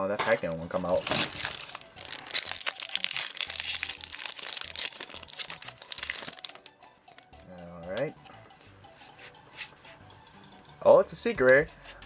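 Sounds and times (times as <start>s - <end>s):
foil wrapper crinkling: 0.5s - 6.7s.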